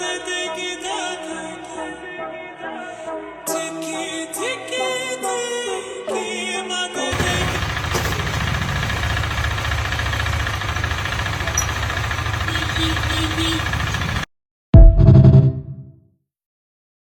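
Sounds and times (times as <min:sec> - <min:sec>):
motorcycle engine idling: 0:07.1 - 0:14.3.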